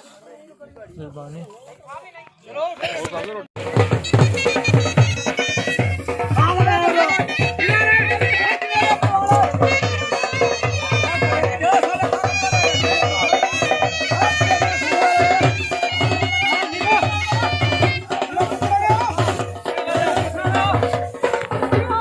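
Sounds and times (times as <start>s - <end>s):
dhol drum beating: 3.6s - 22.0s
reedy wind instrument melody: 3.7s - 21.9s.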